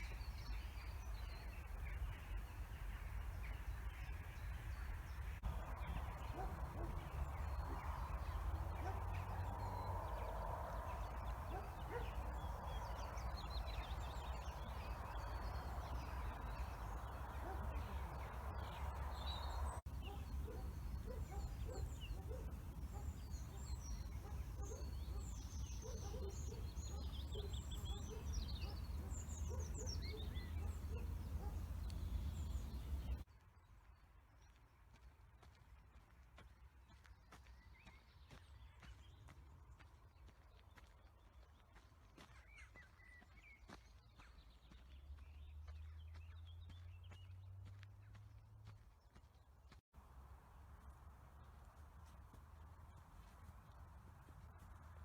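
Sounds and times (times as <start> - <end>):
birds chirping and trilling: 0.0 - 33.2.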